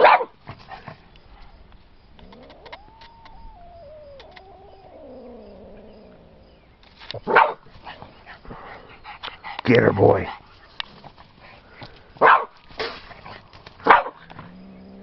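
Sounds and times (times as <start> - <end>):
cat yowling: 2.2 - 6.4.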